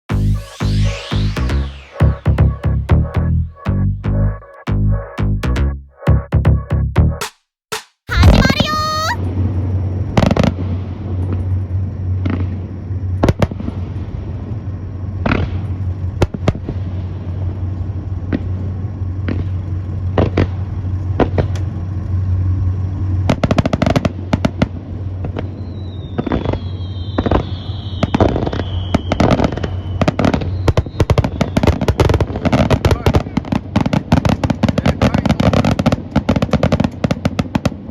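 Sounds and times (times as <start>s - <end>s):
low hum: 0.0s - 7.2s
falling firework whistle: 0.1s - 2.8s, 25.2s - 34.3s
firework bangs: 15.2s - 17.2s, 23.3s - 37.9s.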